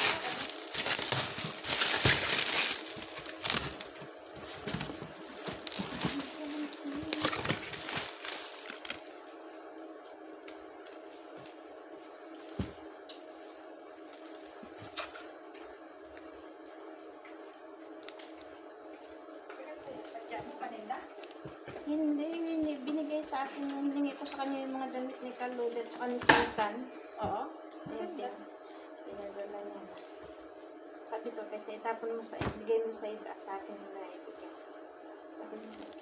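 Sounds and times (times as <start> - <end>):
packaging rustling: 0.0 - 9.4
steady low hum: 0.0 - 36.0.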